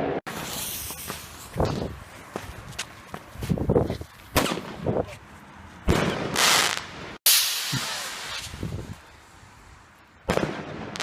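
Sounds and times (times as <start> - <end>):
distant firecracker bangs: 4.4 - 4.9, 5.9 - 8.5.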